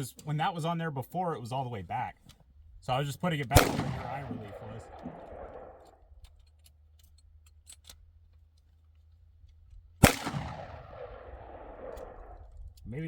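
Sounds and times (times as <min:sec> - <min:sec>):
loud gunshot: 0:03.5 - 0:05.7, 0:10.0 - 0:11.9
gunshot echo: 0:03.5 - 0:05.8, 0:10.0 - 0:12.4.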